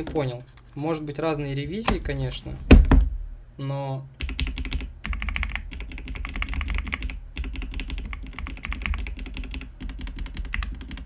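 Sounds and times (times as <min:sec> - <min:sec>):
mechanical keyboard typing: 0:04.2 - 0:11.0.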